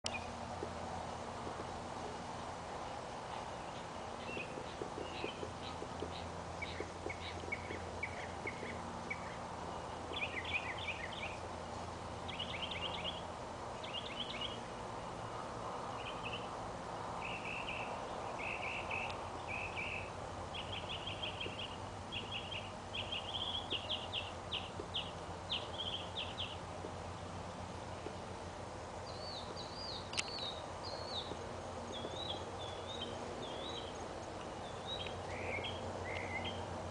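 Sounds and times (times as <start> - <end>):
songbird singing: 0.0 - 36.9
low background hum: 0.1 - 36.9.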